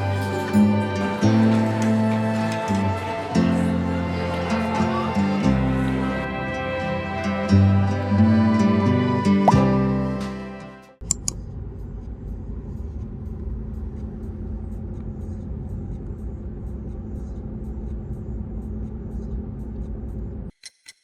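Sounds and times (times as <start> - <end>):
moving vehicle rumble: 11.0 - 20.5.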